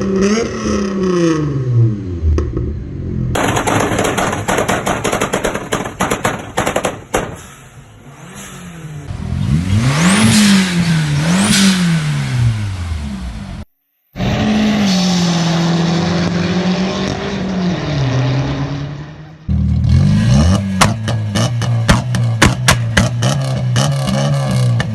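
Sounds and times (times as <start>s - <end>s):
exhaust pops and crackles: 3.4s - 7.7s, 20.8s - 23.3s
engine revving: 6.0s - 24.9s.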